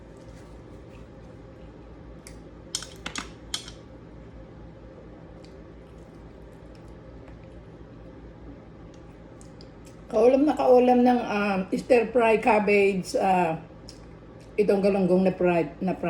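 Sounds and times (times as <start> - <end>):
low steady hum: 0.0 - 16.0
eating clicks and crunches: 5.4 - 7.7, 8.9 - 10.0.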